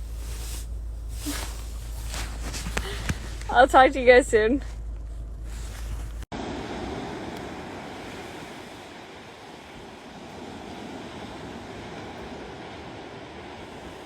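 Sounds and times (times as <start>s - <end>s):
wind: 0.0s - 14.0s
surf washing on shore: 6.3s - 14.0s.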